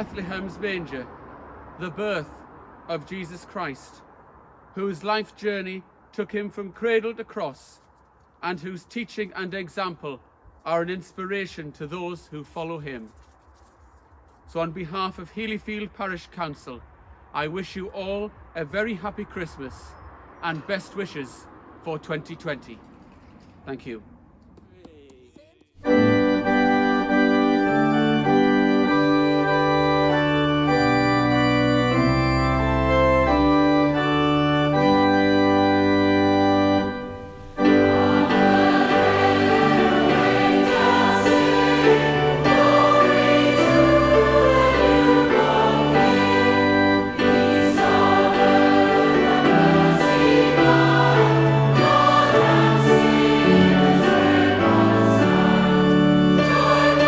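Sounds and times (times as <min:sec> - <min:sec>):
organ playing slow chords: 0:00.0 - 0:00.7, 0:25.8 - 0:57.0
choir singing: 0:37.6 - 0:57.0.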